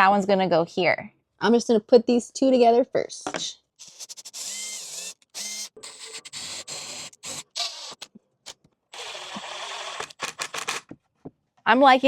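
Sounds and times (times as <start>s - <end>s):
power drill driving screws: 3.8s - 10.9s.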